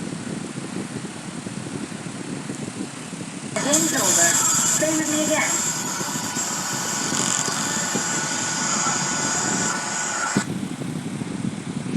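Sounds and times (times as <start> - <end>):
kiddie ride machinery humming: 3.6 - 11.8.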